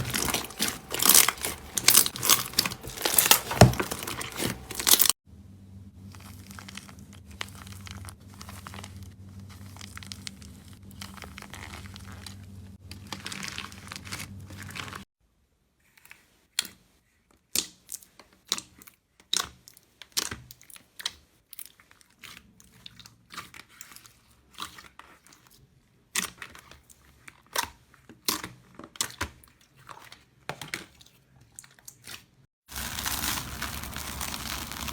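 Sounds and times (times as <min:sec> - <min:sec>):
slime squishing and crinkling: 0:00.0 - 0:05.2, 0:06.0 - 0:15.1, 0:17.4 - 0:34.9
low hum: 0:00.0 - 0:13.0
sharp crackles and clicks: 0:32.7 - 0:34.9.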